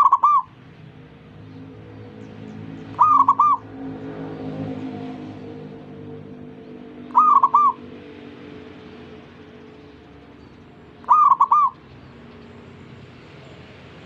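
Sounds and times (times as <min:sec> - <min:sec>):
dove cooing: 0:00.0 - 0:00.6, 0:02.9 - 0:03.8, 0:07.1 - 0:07.9, 0:11.0 - 0:11.8.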